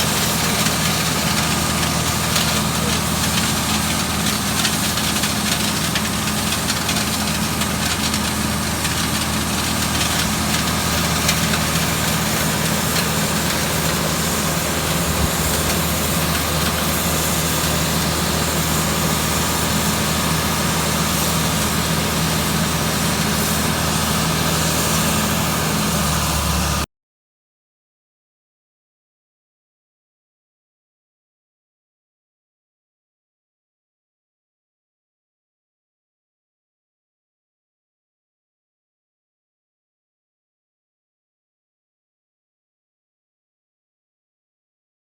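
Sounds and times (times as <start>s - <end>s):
industrial vacuum running: 0.0s - 26.8s.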